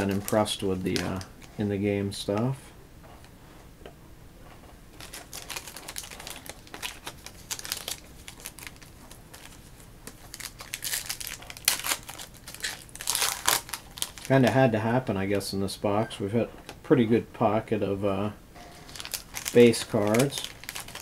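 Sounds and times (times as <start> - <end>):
card pack wrapper crinkling: 0.0 - 1.5, 5.0 - 14.6, 18.7 - 21.0
cards rustling and clicking: 0.0 - 1.6, 5.0 - 14.6, 18.6 - 21.0.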